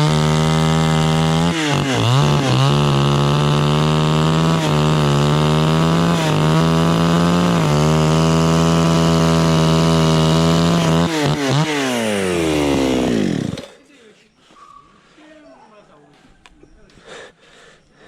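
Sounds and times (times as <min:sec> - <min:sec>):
chainsaw cutting wood: 0:00.0 - 0:13.8.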